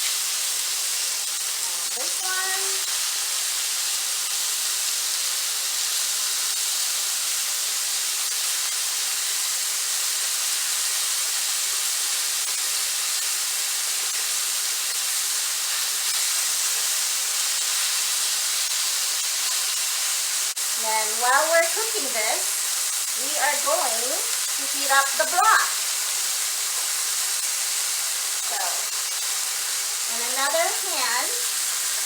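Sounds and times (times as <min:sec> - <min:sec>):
chicken sizzling in a hot pan: 0:00.0 - 0:32.0.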